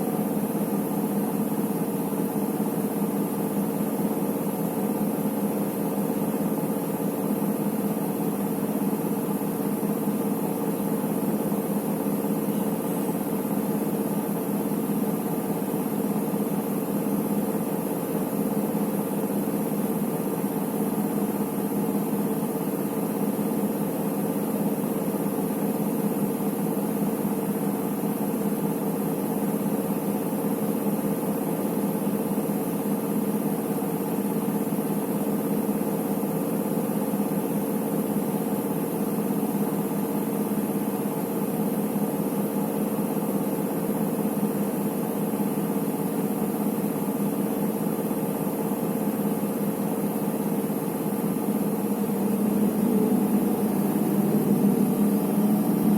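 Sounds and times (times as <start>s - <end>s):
washing machine drum spinning: 50.6s - 55.9s.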